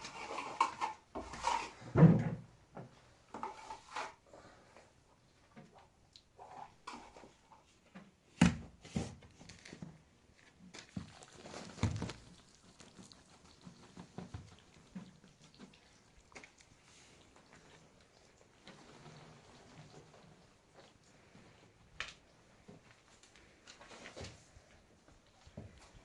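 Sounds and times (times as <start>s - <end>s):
knocks and thumps: 1.9s - 2.9s.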